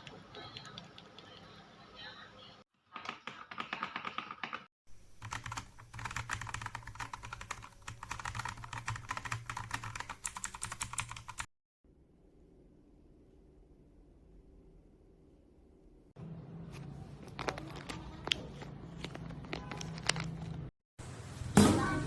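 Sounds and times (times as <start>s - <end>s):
mechanical keyboard typing: 3.0s - 11.5s.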